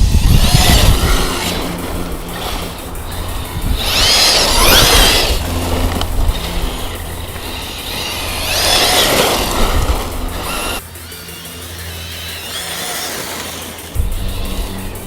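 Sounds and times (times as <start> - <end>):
rough rushing noise: 0.0 - 11.0
electric motor whining: 0.0 - 15.0.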